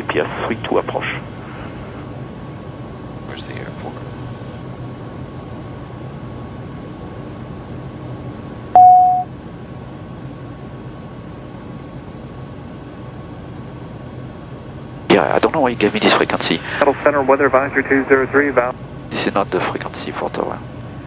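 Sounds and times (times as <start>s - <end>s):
jet cockpit noise: 0.0s - 5.2s, 8.8s - 9.3s, 13.8s - 21.0s
short electronic beep: 8.8s - 9.3s.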